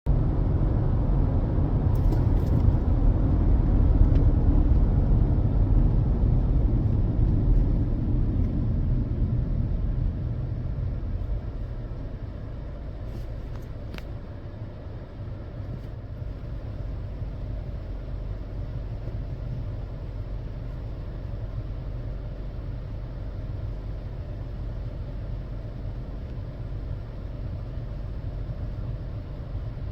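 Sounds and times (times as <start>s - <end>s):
low vehicle rumble: 0.0s - 29.9s.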